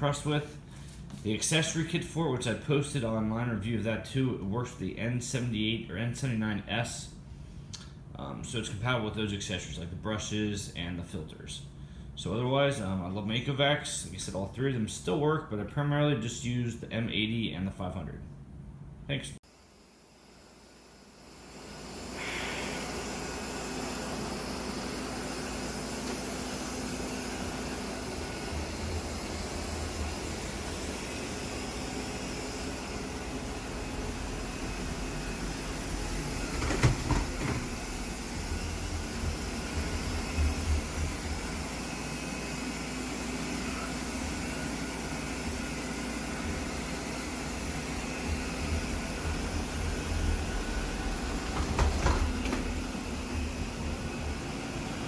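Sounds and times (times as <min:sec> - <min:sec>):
robot vacuum cleaner whirring: 0:19.8 - 0:55.0.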